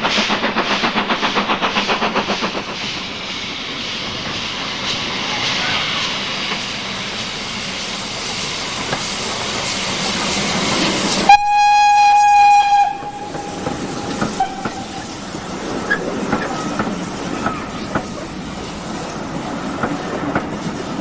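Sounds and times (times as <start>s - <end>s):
steam locomotive hissing: 0.0s - 21.0s
steam whistle: 11.2s - 15.2s
wheels clicking over rail joints: 12.8s - 21.0s.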